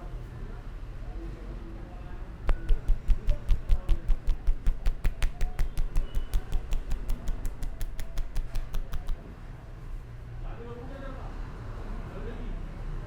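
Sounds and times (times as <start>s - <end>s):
hands tapping on head: 2.5s - 9.2s.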